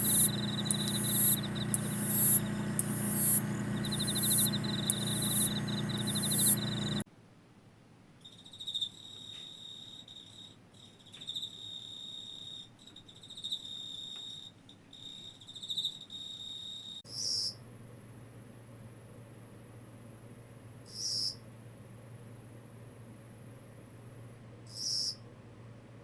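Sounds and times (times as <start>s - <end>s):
cricket trilling: 0.0s - 7.0s, 8.2s - 17.6s, 20.9s - 21.4s, 24.7s - 25.2s
louder insect call: 0.0s - 7.0s, 8.2s - 17.6s, 20.9s - 21.4s, 24.7s - 25.2s.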